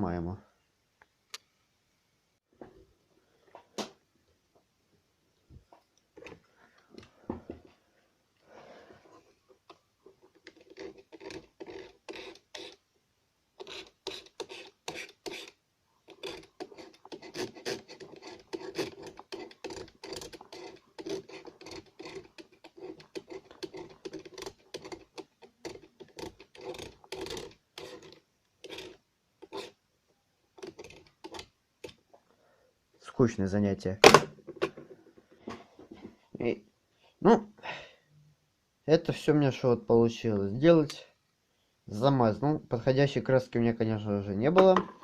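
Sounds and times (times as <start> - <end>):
scratchy rubbing on plastic cover: 9.0 - 12.8, 13.6 - 29.8, 30.5 - 32.0.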